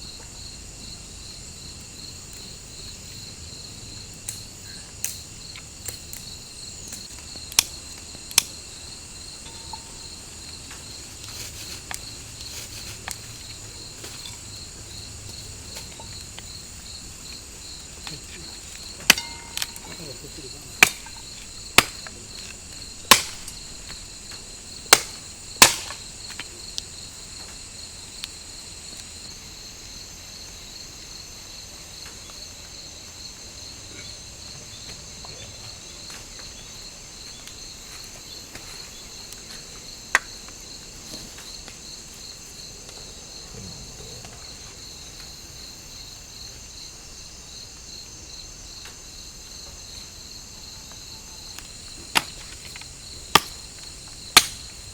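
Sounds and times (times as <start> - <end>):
insects trilling: 0.0 - 54.9
sharp knocks: 19.0 - 20.2.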